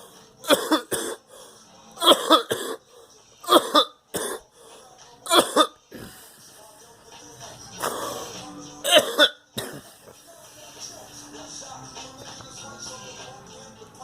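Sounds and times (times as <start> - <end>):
person coughing: 0.4 - 1.2, 2.0 - 2.8, 3.5 - 4.4, 5.3 - 6.2, 8.8 - 10.1.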